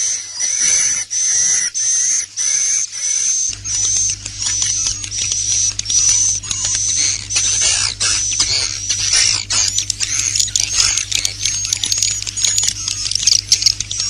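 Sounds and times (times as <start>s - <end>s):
swiftlets twittering: 0.1s - 14.0s
faint low hum: 3.5s - 14.0s.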